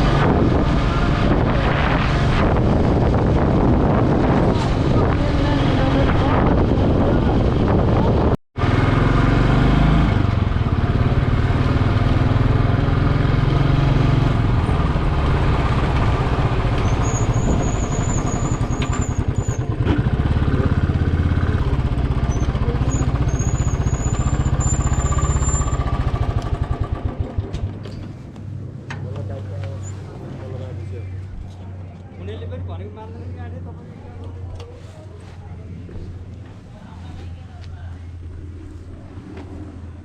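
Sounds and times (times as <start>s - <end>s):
motorcycle engine running: 5.2s - 28.4s.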